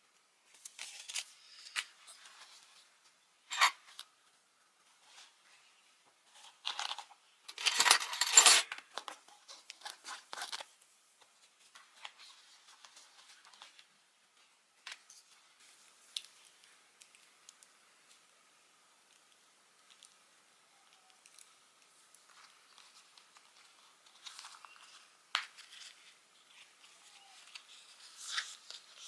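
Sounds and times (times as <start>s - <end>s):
rustling: 22.1s - 29.0s.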